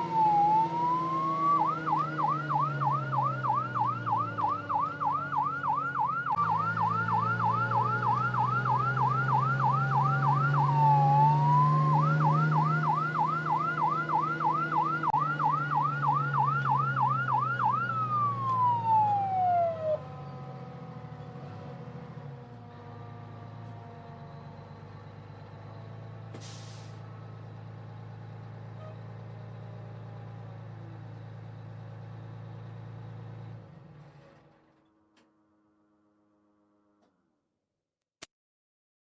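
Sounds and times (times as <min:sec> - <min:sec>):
fire engine siren yelping: 0:00.0 - 0:27.3.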